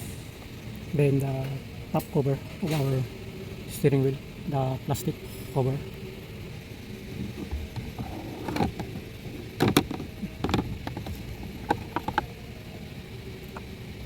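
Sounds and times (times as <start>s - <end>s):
plastic cover clicks and knocks: 9.6s - 12.2s.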